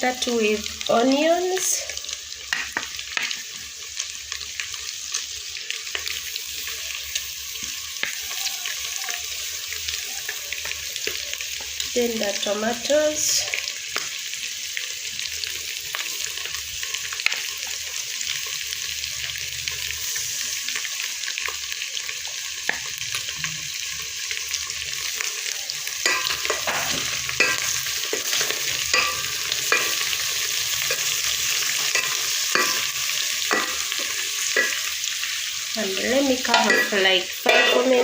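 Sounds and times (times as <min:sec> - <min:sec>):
food sizzling in a pan: 0:00.0 - 0:38.0
spoon scraping a pan: 0:26.0 - 0:35.1, 0:36.3 - 0:38.0.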